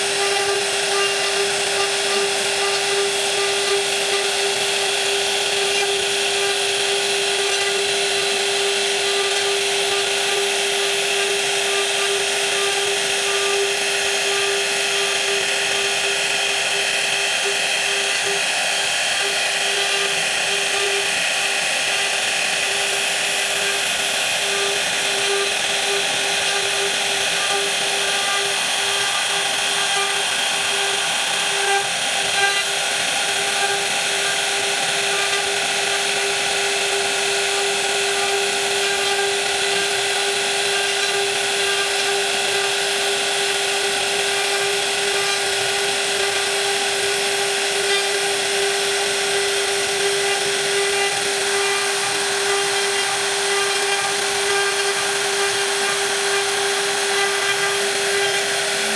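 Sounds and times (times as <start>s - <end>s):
cutting hiss: 0.0s - 58.9s
power tool whining: 0.0s - 58.9s.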